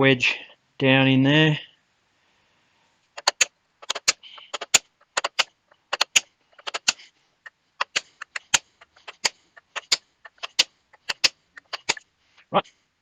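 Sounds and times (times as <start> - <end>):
hammer knocking a wedge: 3.2 - 7.0, 7.8 - 12.0.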